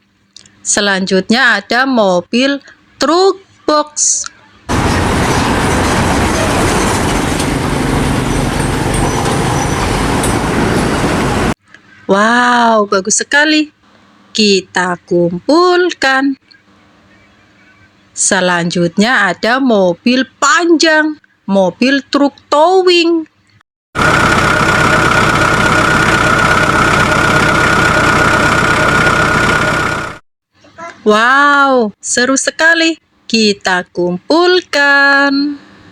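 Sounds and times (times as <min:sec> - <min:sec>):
truck engine running: 0:04.7 - 0:11.6, 0:24.0 - 0:30.2.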